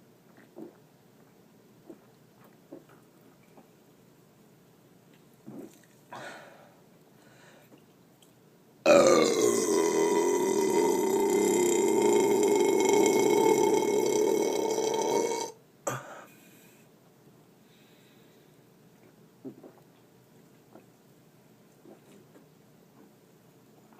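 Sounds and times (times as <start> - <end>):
person belching loudly: 8.9 - 16.0.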